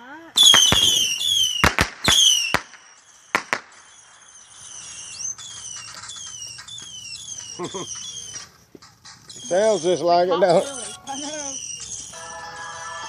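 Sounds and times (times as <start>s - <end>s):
firework pops and cracks: 0.4s - 9.3s
whistling fireworks: 0.4s - 13.0s.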